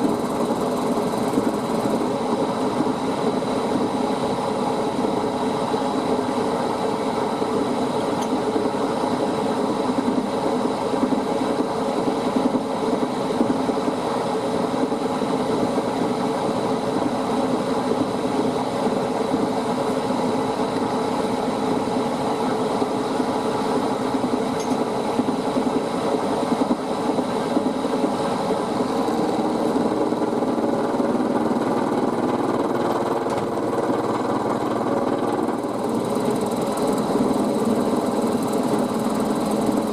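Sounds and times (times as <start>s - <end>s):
milling machine running: 0.0s - 3.6s, 27.8s - 39.9s.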